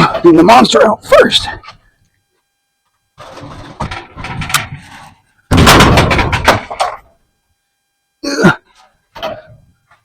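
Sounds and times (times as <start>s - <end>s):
rapid bangs and rattling: 3.3s - 7.0s.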